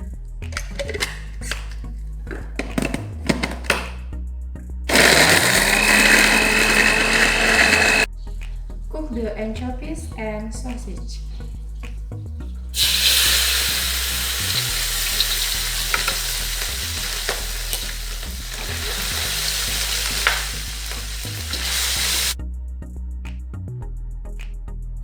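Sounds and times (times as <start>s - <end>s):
food sizzling in a frying pan: 12.8s - 22.4s.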